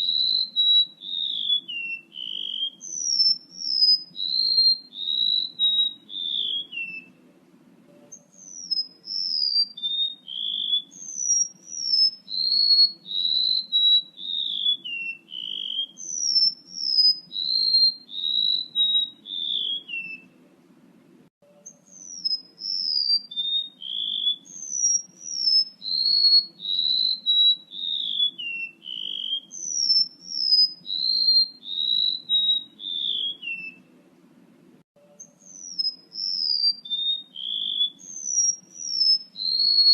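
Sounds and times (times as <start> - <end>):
bird whistling descending notes: 0.0 - 7.2, 8.1 - 20.3, 21.7 - 33.9, 35.2 - 39.9
faint low hum: 0.9 - 9.8, 16.0 - 23.2.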